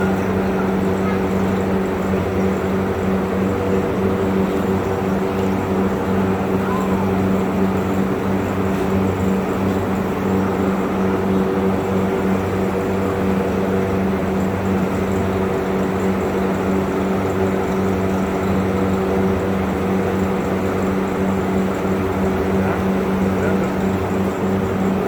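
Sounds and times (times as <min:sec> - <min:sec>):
machine hum: 0:19.3 - 0:25.0.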